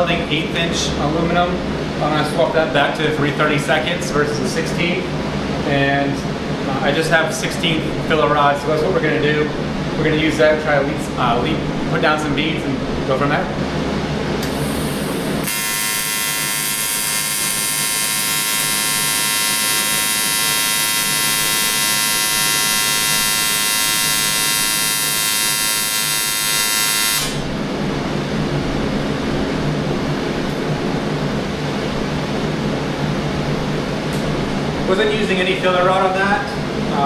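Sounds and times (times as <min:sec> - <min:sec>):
low steady hum: 0:00.0 - 0:37.0
welding arc buzzing hiss: 0:14.4 - 0:27.6.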